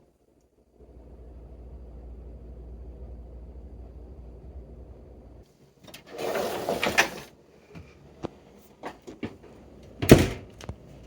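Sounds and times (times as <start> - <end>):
dishwasher rack sliding with rattle: 5.9 - 7.3.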